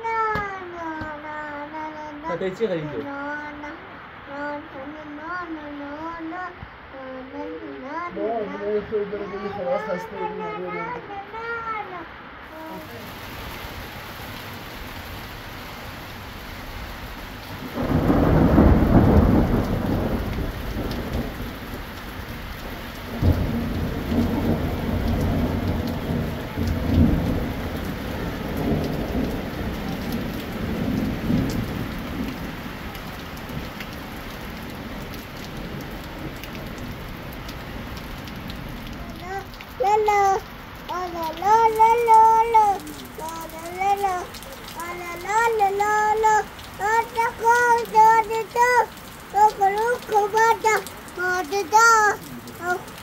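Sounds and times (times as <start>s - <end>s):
steady rain: 0.0s - 53.0s
thunder rumbling and cracking: 17.4s - 40.4s.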